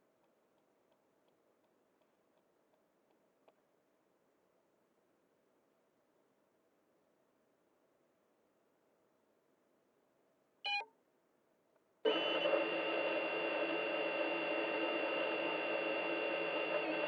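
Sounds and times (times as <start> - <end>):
short electronic beep: 10.7 - 10.9
drone motors humming: 12.1 - 17.0.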